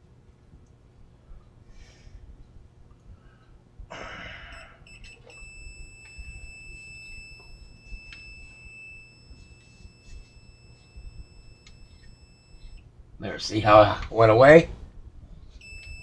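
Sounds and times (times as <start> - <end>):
multimeter continuity beeping: 4.5 - 14.7, 15.5 - 16.0.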